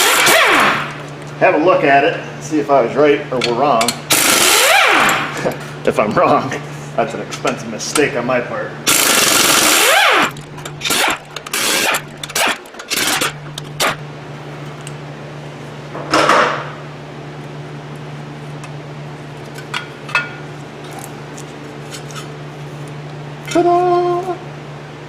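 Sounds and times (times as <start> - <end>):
low hum: 8.8 - 15.9
metallic clicks: 10.3 - 14.0.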